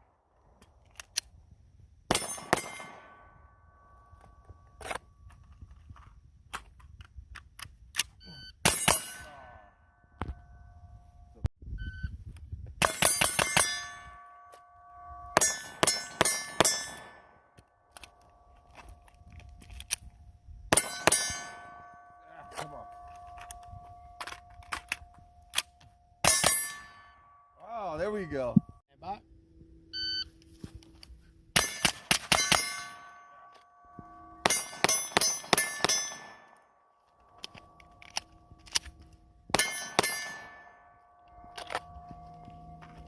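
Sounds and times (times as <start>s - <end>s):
rifle shots: 2.1s - 3.2s, 31.6s - 33.1s
steel targets ringing: 2.1s - 4.8s, 8.6s - 11.2s, 12.8s - 18.6s, 20.7s - 28.7s, 31.5s - 43.0s.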